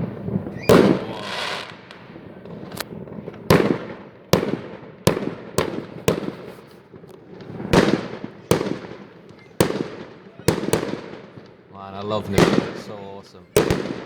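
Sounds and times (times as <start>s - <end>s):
fireworks bangs with echo: 0.0s - 14.0s.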